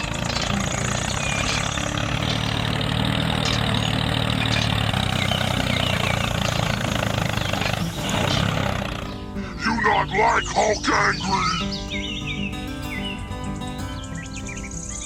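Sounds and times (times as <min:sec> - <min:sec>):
motor idling hum: 0:00.0 - 0:15.0.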